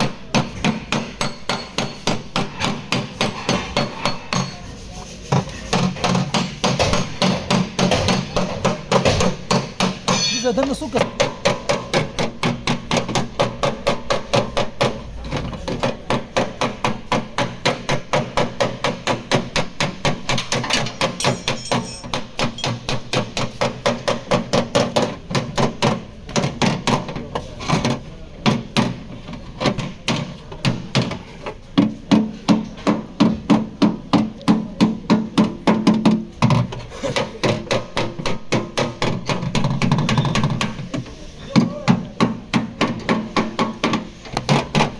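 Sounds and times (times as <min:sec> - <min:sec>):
hammer beating sheet metal: 0:00.0 - 0:27.1.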